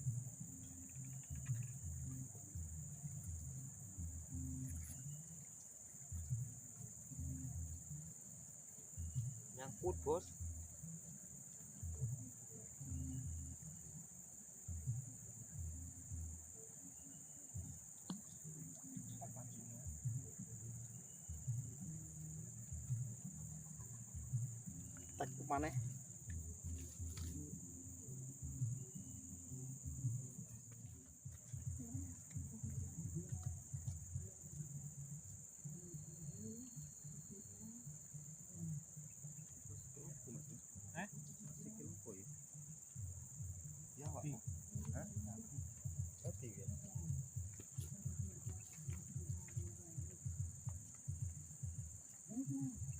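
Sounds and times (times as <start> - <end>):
insects droning: 0.0 - 52.9
low muffled rumbles: 42.9 - 52.9.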